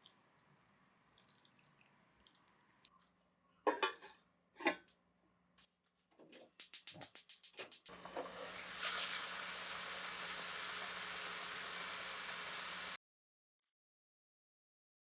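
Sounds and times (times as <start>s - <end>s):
rapid clicks: 6.6s - 7.9s
food sizzling in a frying pan: 7.2s - 13.0s.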